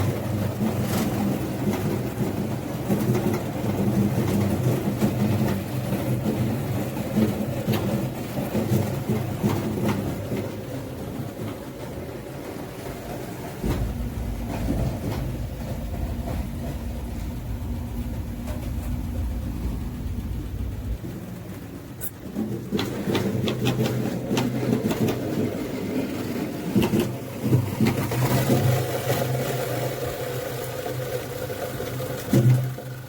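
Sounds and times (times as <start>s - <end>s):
machinery humming: 0.0s - 33.0s
sharp clicks and knocks: 13.5s - 19.4s, 20.2s - 28.7s.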